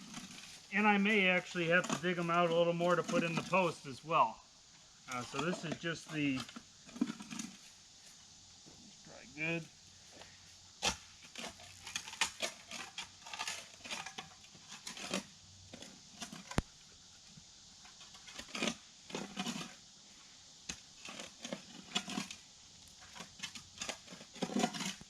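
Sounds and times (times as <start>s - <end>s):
spade scraping soil: 0.0s - 4.4s, 5.1s - 7.8s, 10.8s - 16.7s, 17.8s - 19.8s, 20.6s - 25.0s.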